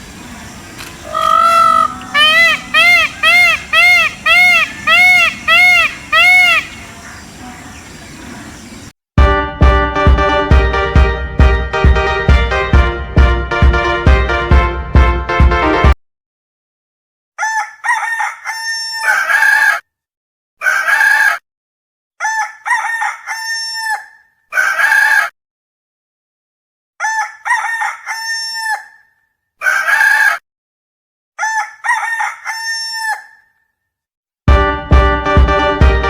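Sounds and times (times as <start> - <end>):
rooster crowing: 0.0 - 8.8.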